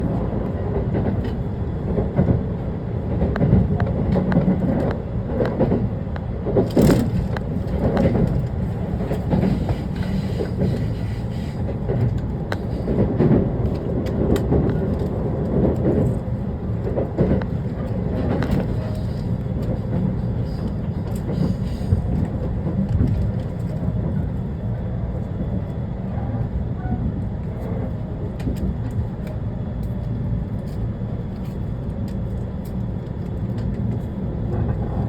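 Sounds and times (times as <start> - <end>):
electric train rumbling: 0.0 - 35.0
wheels clicking over rail joints: 3.1 - 23.7.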